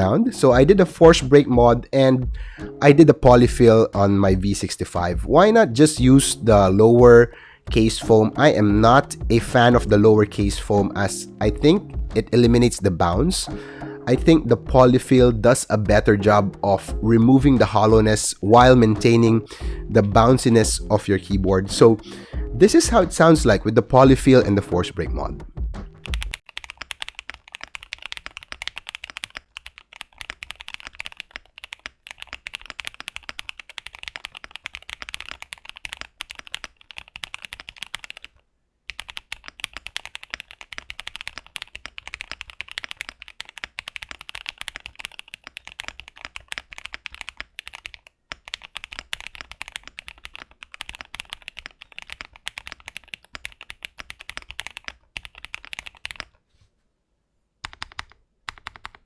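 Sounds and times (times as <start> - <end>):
mechanical keyboard typing: 26.0 - 56.4, 57.6 - 59.0.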